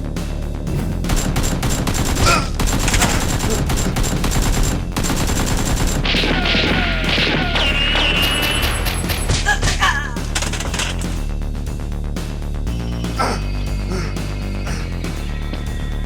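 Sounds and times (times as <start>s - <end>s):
rapid gunfire: 1.0s - 11.3s.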